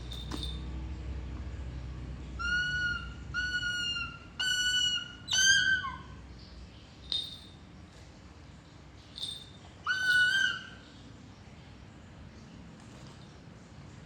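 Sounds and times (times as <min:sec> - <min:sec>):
eagle whistled calls: 0:02.4 - 0:06.2, 0:09.8 - 0:10.8.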